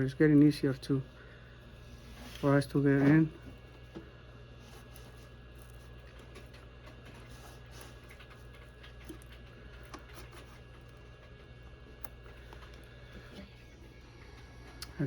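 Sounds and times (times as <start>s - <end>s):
tool clicking and scratching: 4.6s - 13.5s.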